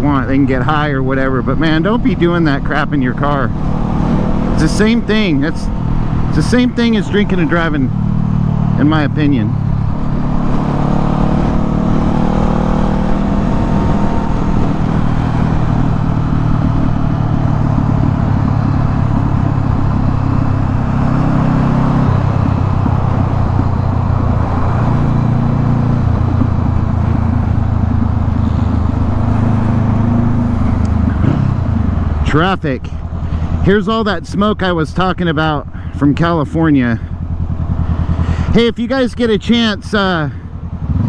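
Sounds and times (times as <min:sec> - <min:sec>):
motorcycle engine running: 0:00.0 - 0:41.0
wind rush: 0:01.8 - 0:32.3.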